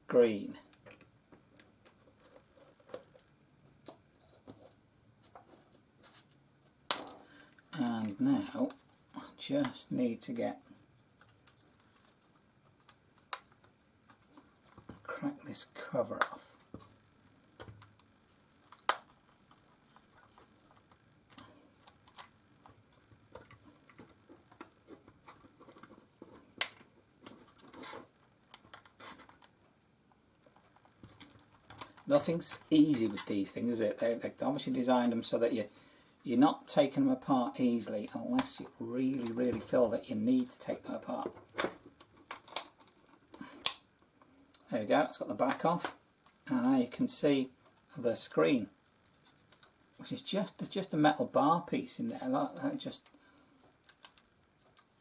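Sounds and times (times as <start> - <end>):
plastic casing clicking and snapping: 41.4 - 43.8.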